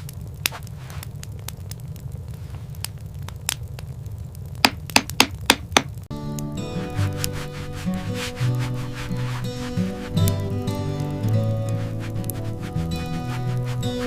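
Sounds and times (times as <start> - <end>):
music with held notes: 6.1 - 14.0.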